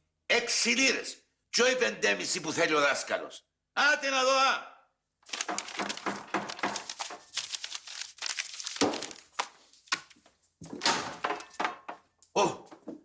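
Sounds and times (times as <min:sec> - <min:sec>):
rustling and crinkling: 0:05.2 - 0:12.1.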